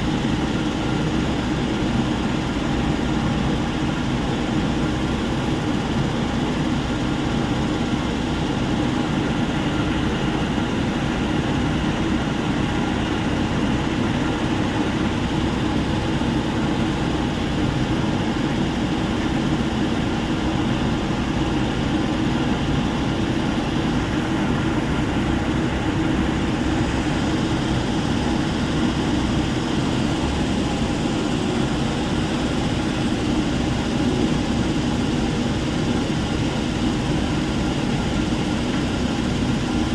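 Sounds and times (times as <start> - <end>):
heavy machinery engine drone: 0.0 - 39.9.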